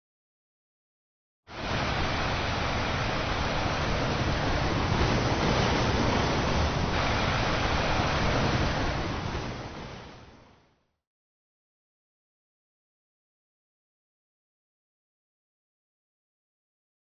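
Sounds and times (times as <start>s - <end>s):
steady rushing noise: 1.5s - 10.8s.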